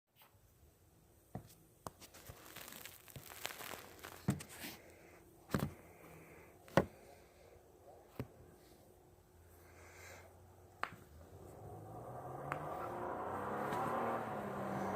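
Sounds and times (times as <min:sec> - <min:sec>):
rustling: 0:01.9 - 0:06.0.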